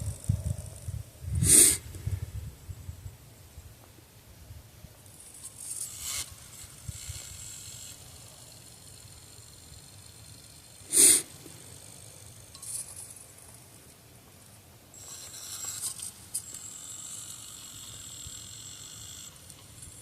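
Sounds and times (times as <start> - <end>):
high hiss with thin whine: 0.0 - 20.0
person sniffing: 1.4 - 1.9, 10.8 - 11.5.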